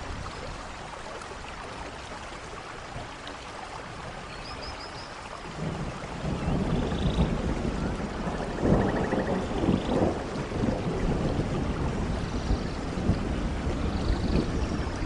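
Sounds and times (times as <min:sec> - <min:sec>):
steady rain: 0:00.0 - 0:15.0
rolling thunder: 0:05.6 - 0:15.0.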